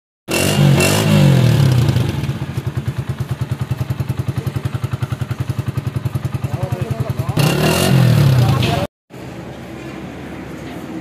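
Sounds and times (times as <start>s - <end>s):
motorcycle engine revving and idling: 0.3s - 8.9s.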